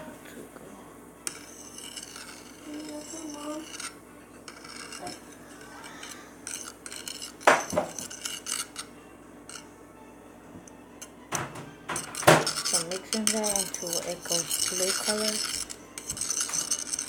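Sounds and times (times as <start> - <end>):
utensil scraping a plate: 1.2 - 9.7, 11.9 - 17.0.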